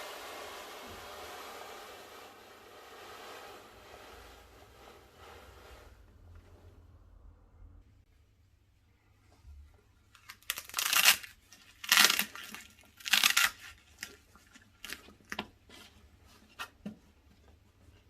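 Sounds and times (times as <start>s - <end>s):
packaging ripping: 10.2s - 15.4s.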